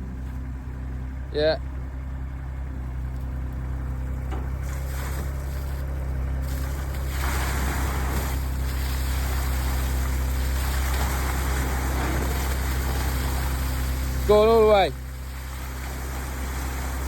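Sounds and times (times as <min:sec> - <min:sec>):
engine idling: 0:00.0 - 0:17.0
water rushing out: 0:04.5 - 0:17.0.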